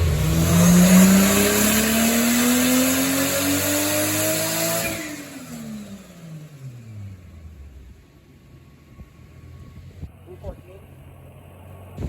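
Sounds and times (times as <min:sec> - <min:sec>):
engine revving at full throttle: 0:00.0 - 0:07.4.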